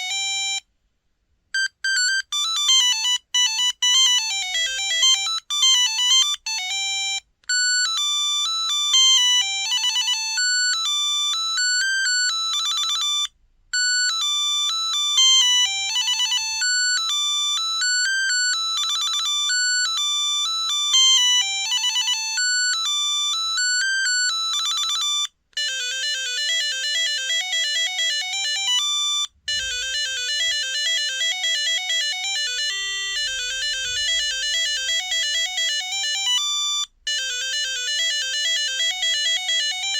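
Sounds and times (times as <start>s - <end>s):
electronic beep ringtone melodies: 27.0s - 39.9s.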